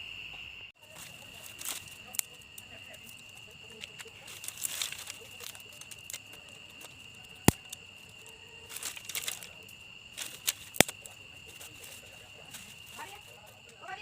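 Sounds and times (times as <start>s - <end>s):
crickets trilling: 0.0s - 14.0s
rustling scrapes: 3.8s - 7.0s, 8.1s - 10.8s
sharp clicks: 10.2s - 11.2s.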